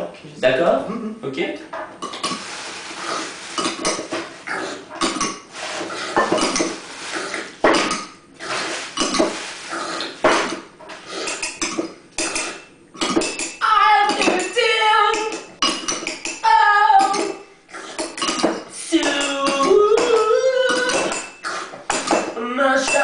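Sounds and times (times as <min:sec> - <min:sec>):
cutlery pots and dishes clattering: 0:03.5 - 0:06.8, 0:07.6 - 0:09.4, 0:10.0 - 0:16.4, 0:17.0 - 0:23.0
woman's wordless singing: 0:13.6 - 0:15.4, 0:16.4 - 0:17.4, 0:18.7 - 0:21.2.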